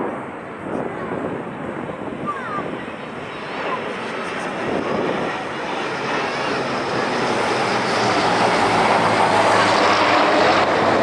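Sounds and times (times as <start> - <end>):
military aircraft engines roaring: 0.0 - 11.0.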